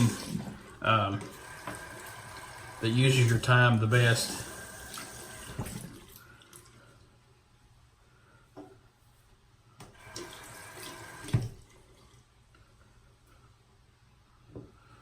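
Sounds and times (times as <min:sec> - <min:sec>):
sink tap running: 0:00.0 - 0:06.2, 0:09.8 - 0:11.8.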